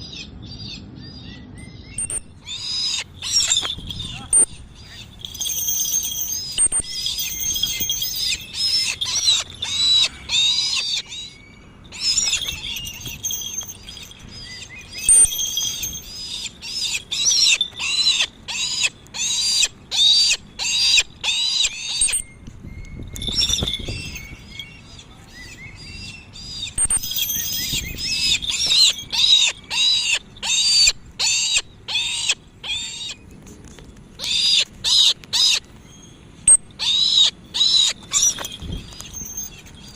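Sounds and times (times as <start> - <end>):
kite squealing calls: 2.0 - 22.2, 36.5 - 39.9.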